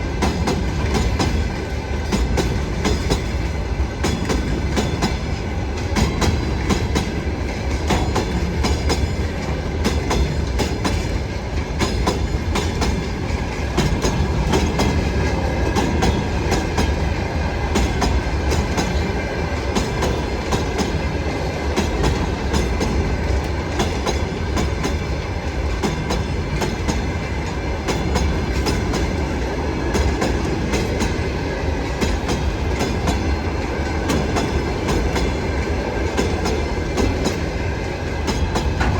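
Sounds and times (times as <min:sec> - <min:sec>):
train wheels clicking over rail joints: 0:00.0 - 0:38.9.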